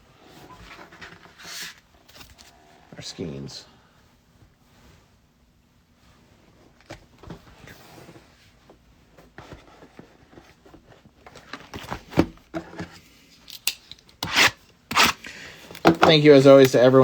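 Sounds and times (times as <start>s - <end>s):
cards and packaging rustling: 9.3s - 17.0s.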